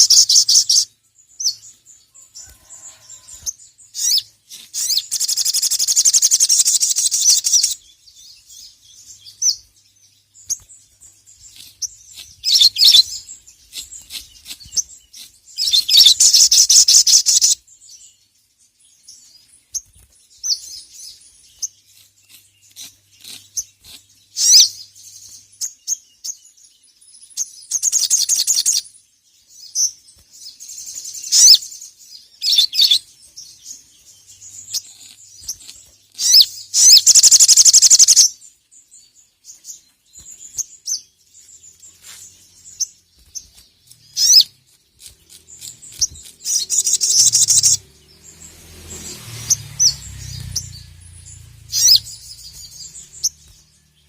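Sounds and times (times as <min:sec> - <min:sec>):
bird chattering trills: 0:04.0 - 0:07.8, 0:34.6 - 0:38.4, 0:43.5 - 0:53.6
short sharp bird chirps: 0:10.4 - 0:18.0, 0:19.7 - 0:26.4, 0:34.4 - 0:38.4, 0:40.2 - 0:47.8, 0:48.9 - 0:53.7.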